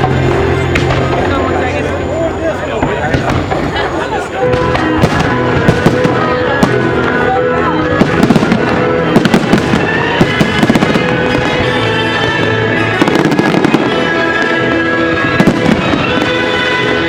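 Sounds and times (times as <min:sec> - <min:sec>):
fireworks bangs and crackles: 0:00.0 - 0:17.0
music with long held notes: 0:00.0 - 0:17.0.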